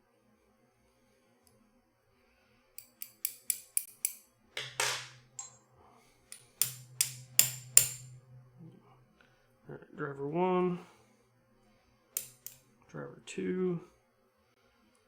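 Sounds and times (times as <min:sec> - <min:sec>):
small metal clicks from lock pins: 0:02.8 - 0:04.2.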